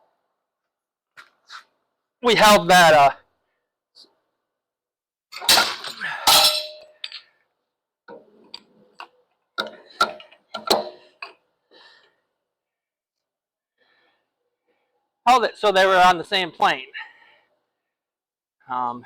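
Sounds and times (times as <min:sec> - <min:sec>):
steel pieces clanking: 0:05.4 - 0:07.4.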